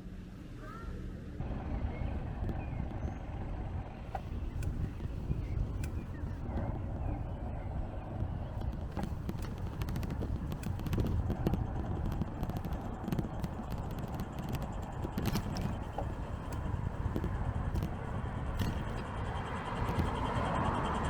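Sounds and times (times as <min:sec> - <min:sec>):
bicycle ride rumble: 0:00.0 - 0:21.0
bicycle clicks and rattles: 0:04.1 - 0:06.5, 0:08.5 - 0:21.0.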